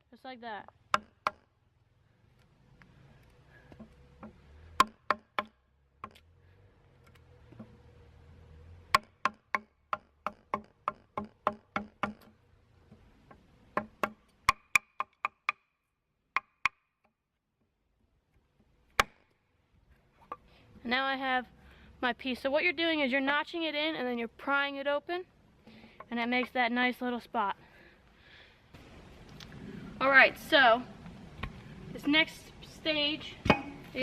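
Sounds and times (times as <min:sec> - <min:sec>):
wooden baton striking knife spine: 0:33.4 - 0:33.9.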